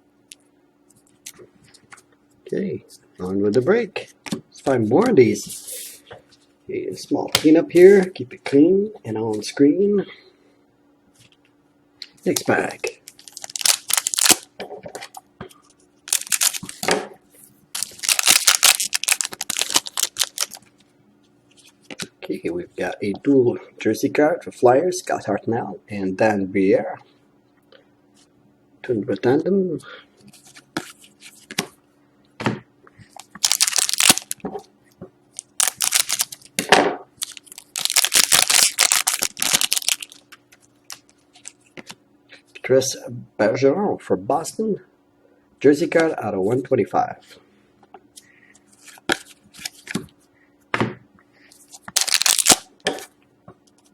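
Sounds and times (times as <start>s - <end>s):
wrapper tearing and crinkling: 12.3s - 14.5s, 16.0s - 16.9s, 17.7s - 20.7s, 33.2s - 34.4s, 35.4s - 36.5s, 37.2s - 41.7s, 51.8s - 53.1s.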